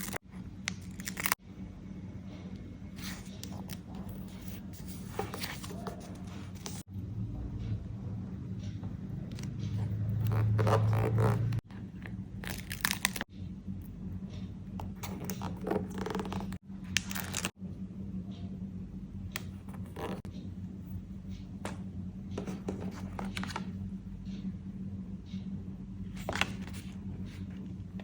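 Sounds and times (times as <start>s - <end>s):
steady low hum: 0.0s - 28.0s
paper rustling: 3.0s - 6.8s.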